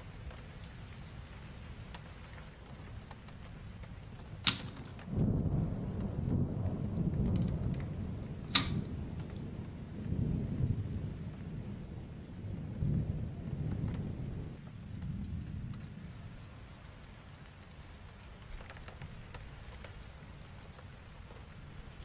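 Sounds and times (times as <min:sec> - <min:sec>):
low rumbling handling noise: 0:04.1 - 0:09.5.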